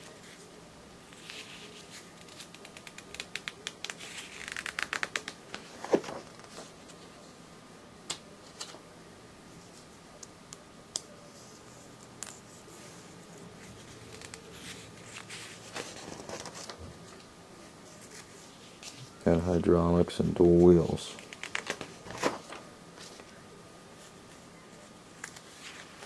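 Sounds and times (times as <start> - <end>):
pages flicking and rustling: 1.1 - 7.0, 13.6 - 17.2, 21.1 - 23.4, 25.2 - 26.0
light paper clicks: 1.2 - 6.6, 13.7 - 16.8, 21.1 - 23.3.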